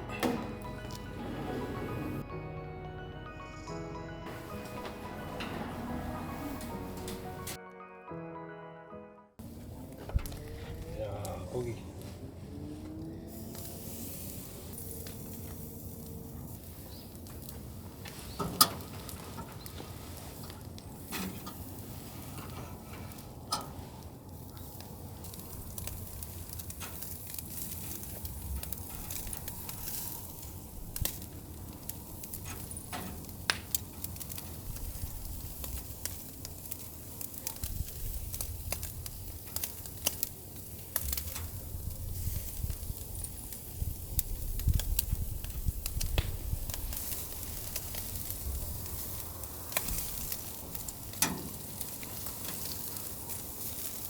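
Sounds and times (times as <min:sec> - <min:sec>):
beef sizzling on charcoal grill: 0:09.4 - 0:54.0
crackles and pops: 0:23.2 - 0:54.0.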